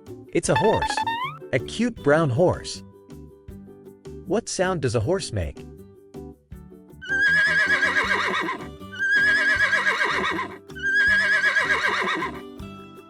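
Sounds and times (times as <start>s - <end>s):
horse whinnying: 7.0s - 12.5s.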